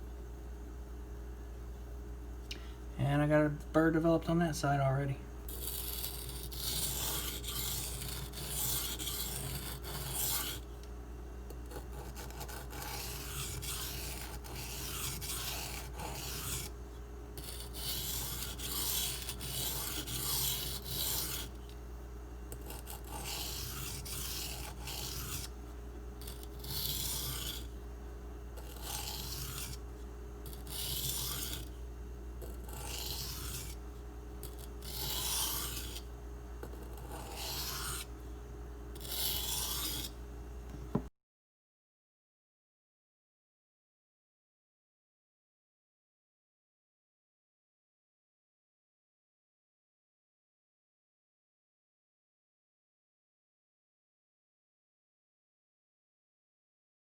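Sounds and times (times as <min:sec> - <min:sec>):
knife rasping on sharpening stone: 0:05.5 - 0:10.6, 0:11.7 - 0:16.7, 0:17.4 - 0:21.5, 0:22.6 - 0:25.5, 0:26.2 - 0:27.7, 0:28.6 - 0:29.8, 0:30.5 - 0:31.7, 0:32.5 - 0:33.8, 0:34.4 - 0:36.0, 0:36.7 - 0:38.1, 0:39.0 - 0:40.1.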